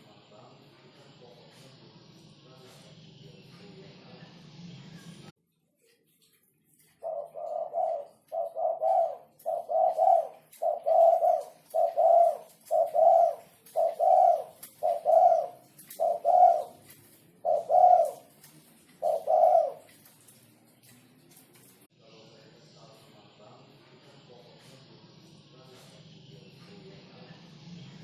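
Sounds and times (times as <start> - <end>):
dove cooing: 7.0 - 20.2.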